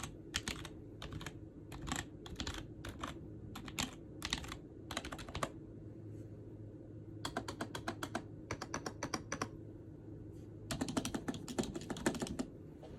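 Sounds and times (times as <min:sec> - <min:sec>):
keyboard typing: 0:00.0 - 0:05.6, 0:07.2 - 0:09.6, 0:10.7 - 0:12.5.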